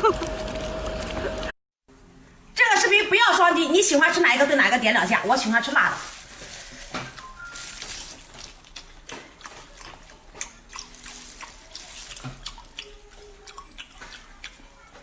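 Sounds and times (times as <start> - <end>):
wet eating smacks and slurps: 8.3 - 15.0.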